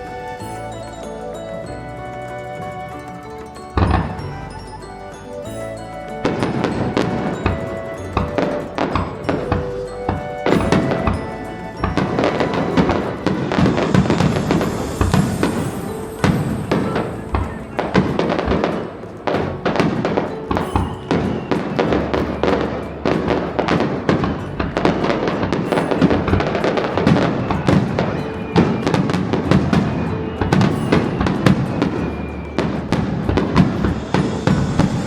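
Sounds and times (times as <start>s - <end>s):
music playing: 0.0s - 35.0s
fireworks bangs and crackles: 5.5s - 35.0s.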